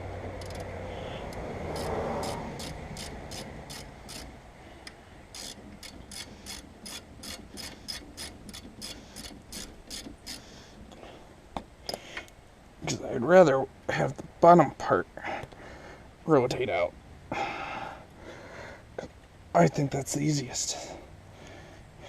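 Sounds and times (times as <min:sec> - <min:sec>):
ratchet wrench clicking: 0:00.4 - 0:10.4.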